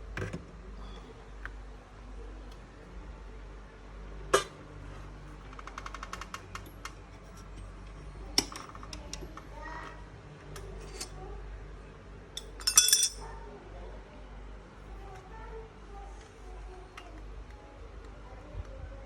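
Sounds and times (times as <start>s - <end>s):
low steady hum: 6.4s - 19.0s.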